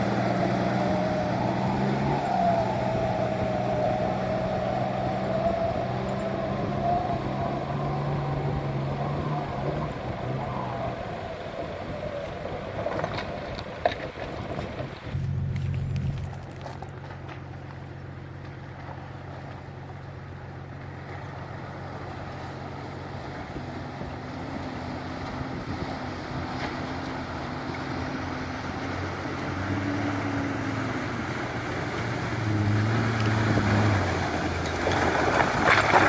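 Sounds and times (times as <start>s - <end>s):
diesel engine running: 0.0s - 11.9s, 12.5s - 36.0s
water splashing: 20.9s - 36.0s.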